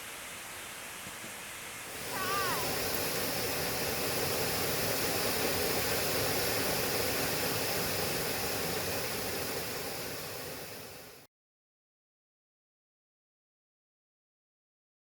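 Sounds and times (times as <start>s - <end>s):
rush of falling water: 0.0s - 11.3s.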